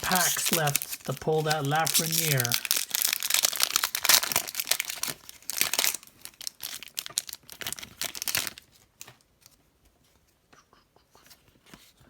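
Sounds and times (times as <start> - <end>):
wrapper tearing and crinkling: 0.0 - 9.2.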